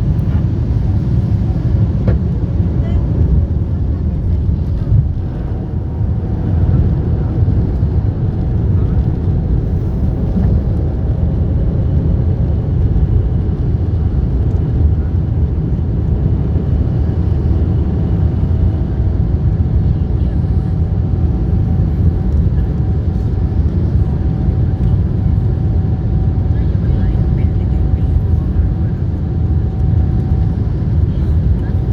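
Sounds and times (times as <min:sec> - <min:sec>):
faint whine: 0:00.0 - 0:19.3
airliner cabin engine rumble: 0:00.0 - 0:31.9.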